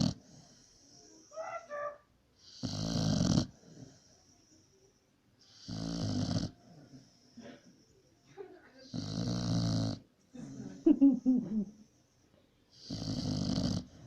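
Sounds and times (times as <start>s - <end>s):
dog snoring: 0.0s - 1.3s, 2.4s - 4.6s, 5.4s - 7.3s, 8.8s - 10.8s, 12.7s - 14.0s.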